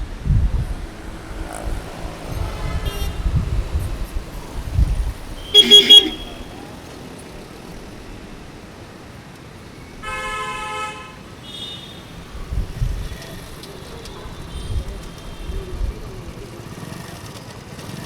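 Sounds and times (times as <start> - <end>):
vehicles rumbling past: 0.0 - 11.4, 12.0 - 18.0
traffic hum: 0.0 - 18.0
car horn honking: 2.3 - 3.8, 5.3 - 6.7, 10.0 - 11.9
higher-pitched toot: 5.4 - 6.6.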